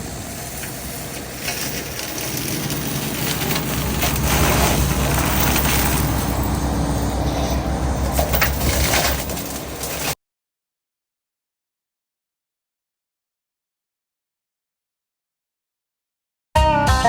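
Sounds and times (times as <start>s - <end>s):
diesel engine droning: 0.0s - 10.2s
flail mulcher shredding vegetation: 0.0s - 10.2s.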